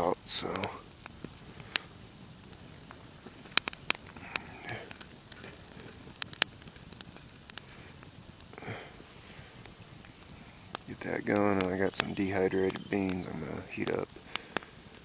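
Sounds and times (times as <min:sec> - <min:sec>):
burning wood popping: 0:00.0 - 0:15.0
campfire crackling: 0:00.0 - 0:15.0.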